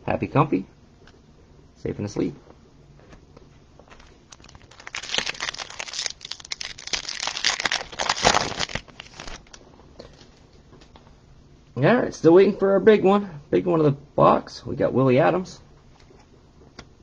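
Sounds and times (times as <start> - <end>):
wrapper being torn and crinkled: 3.9 - 9.6.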